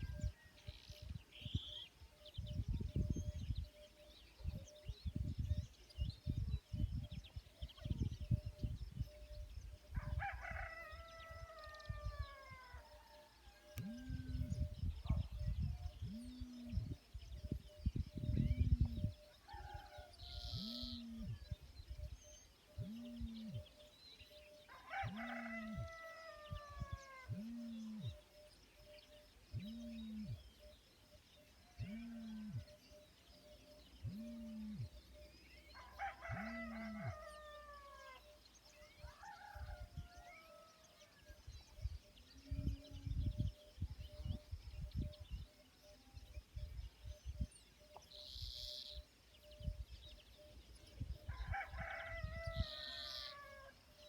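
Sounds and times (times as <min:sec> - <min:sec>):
roosters crowing: 0:24.7 - 0:27.6, 0:35.8 - 0:38.2, 0:51.3 - 0:53.8.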